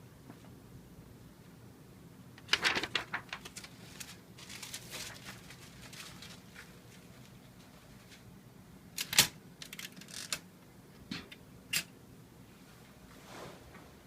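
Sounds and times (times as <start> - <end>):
manual typewriter clacking: 9.0 - 10.4
rustling sliding sound: 12.5 - 14.0.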